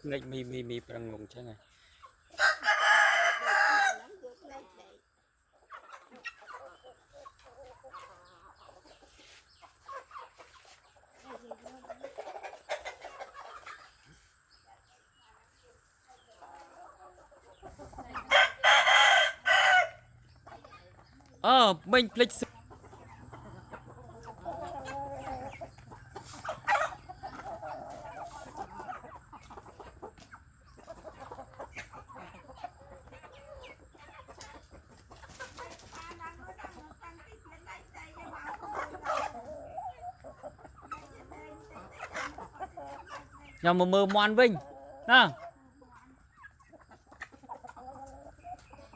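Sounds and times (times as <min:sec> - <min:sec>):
chickens clucking: 0:00.0 - 0:48.9.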